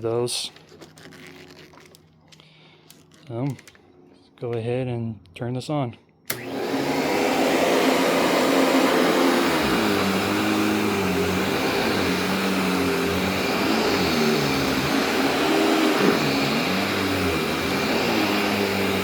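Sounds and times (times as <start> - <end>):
vacuum cleaner motor whine: 6.3 - 19.0.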